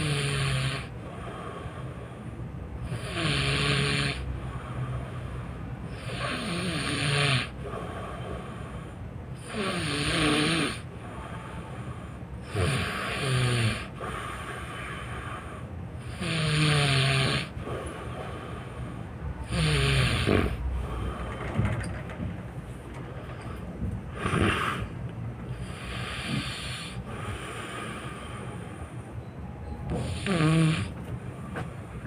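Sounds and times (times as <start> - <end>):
person snoring loudly: 0.0 - 0.9, 2.8 - 4.3, 5.9 - 7.6, 9.4 - 10.9, 12.4 - 17.7, 19.4 - 20.6, 24.1 - 24.9, 25.6 - 28.4, 30.0 - 31.0.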